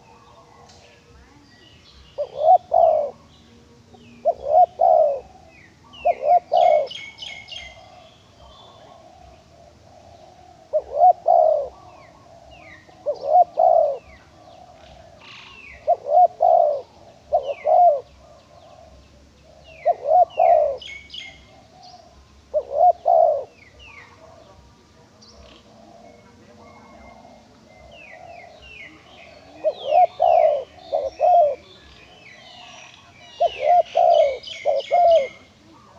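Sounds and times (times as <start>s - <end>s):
dove cooing: 0.0s - 35.9s
small birds chirping: 0.0s - 35.9s.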